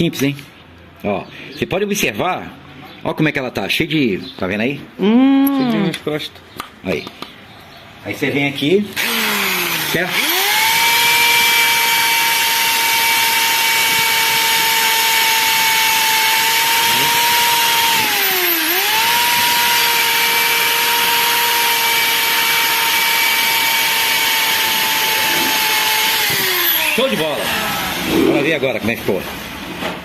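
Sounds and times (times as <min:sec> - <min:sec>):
electric drill motor whine: 0:09.0 - 0:28.1
valve grinding against seat: 0:09.0 - 0:28.2.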